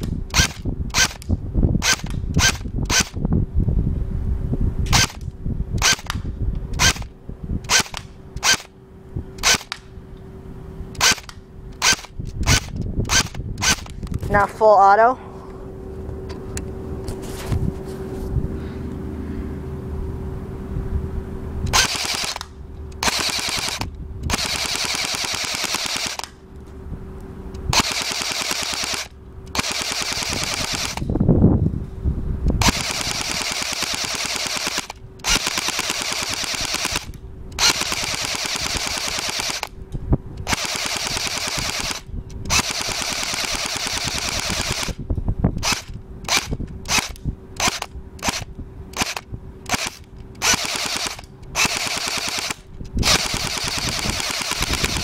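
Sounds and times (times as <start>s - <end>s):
airsoft gun firing bursts: 21.7s - 26.4s, 27.7s - 31.1s, 32.6s - 39.7s, 40.4s - 45.0s, 45.6s - 55.0s.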